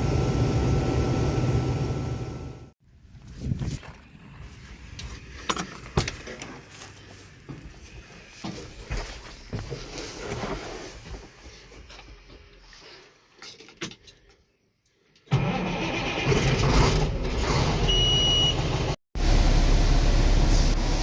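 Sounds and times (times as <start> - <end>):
diesel engine running: 0.0 - 2.7, 17.2 - 21.0
high single-tone beep: 17.9 - 18.6.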